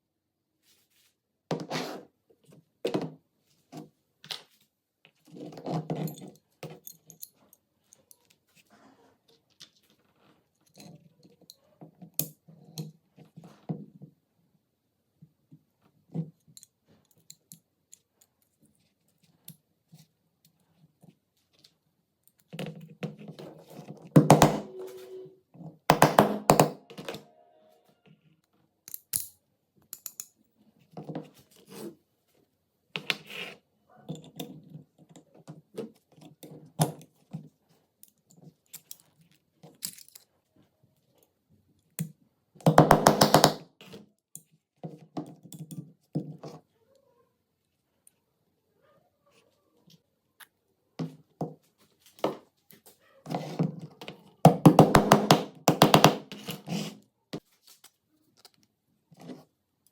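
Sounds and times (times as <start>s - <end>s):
small metal parts clicking: 28.8s - 30.4s, 39.7s - 40.3s.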